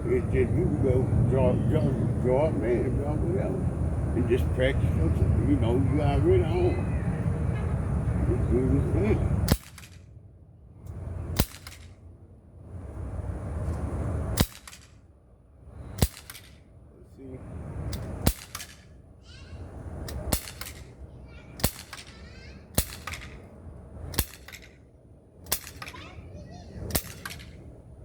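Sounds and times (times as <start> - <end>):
air pistol shots cracking: 9.4 - 10.0, 11.3 - 12.0, 14.3 - 15.0, 15.9 - 16.6, 17.9 - 18.9, 20.1 - 21.0, 21.6 - 23.4, 24.1 - 24.7, 25.4 - 26.0, 26.9 - 27.6.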